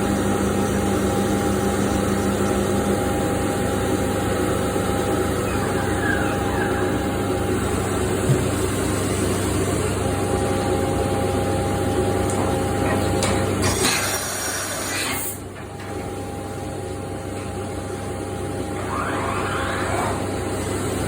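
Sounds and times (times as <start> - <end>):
machine hum: 0.0 - 21.0.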